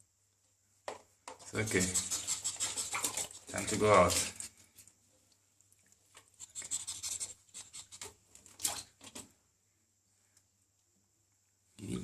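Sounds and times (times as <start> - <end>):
ferret scratching and rubbing: 1.4 - 4.7, 6.3 - 9.2.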